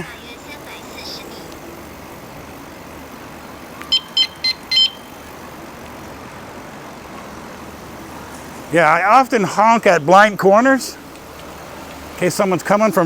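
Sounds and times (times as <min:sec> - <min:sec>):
steady background noise: 0:00.0 - 0:13.0
electronic bicycle horn beeping: 0:03.9 - 0:05.4.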